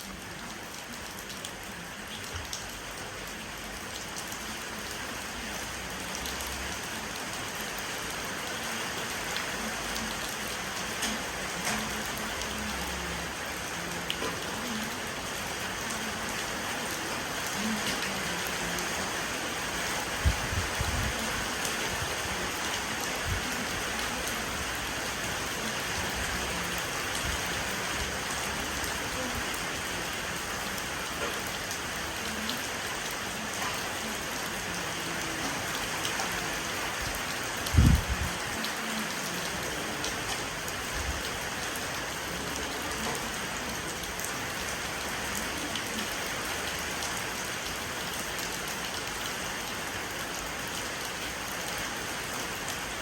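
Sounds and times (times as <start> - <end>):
rain falling on a porch: 0.0 - 53.0.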